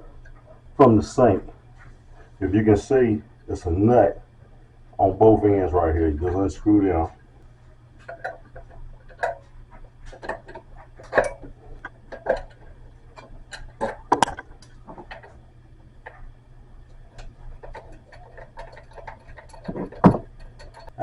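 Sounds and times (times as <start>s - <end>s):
wrench clicking and knocking: 17.6s - 21.0s.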